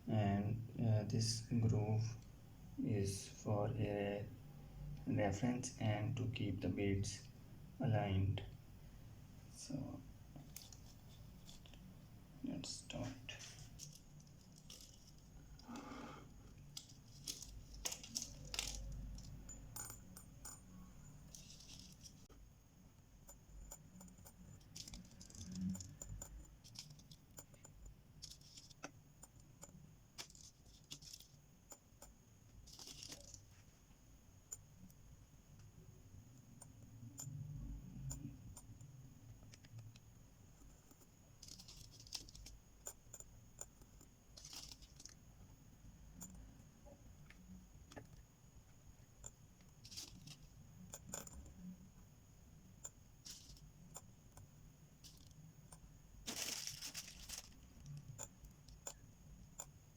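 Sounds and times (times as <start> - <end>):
metal beads clicking against metal: 13.6 - 15.4, 16.7 - 22.2, 23.7 - 28.7.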